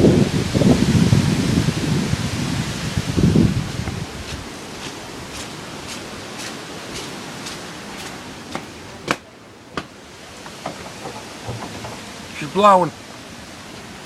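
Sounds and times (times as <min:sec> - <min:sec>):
gust buffeting microphone: 0:00.0 - 0:09.9
wind and rain hiss: 0:00.0 - 0:14.0.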